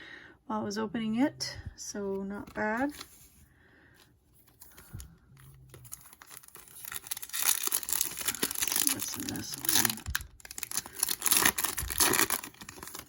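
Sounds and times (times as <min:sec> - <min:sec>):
foil wrapper tearing and crinkling: 0:05.8 - 0:13.0.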